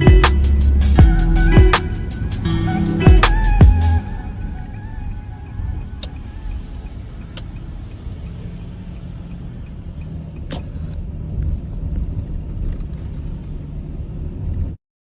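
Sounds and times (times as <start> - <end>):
car driving rumble: 0.0 - 14.8.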